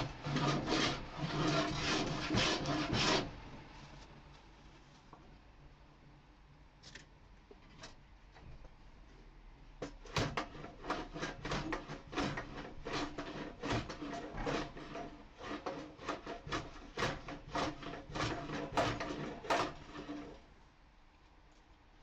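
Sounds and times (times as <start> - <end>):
hand plane scraping wood: 0.0 - 3.4, 10.1 - 20.4.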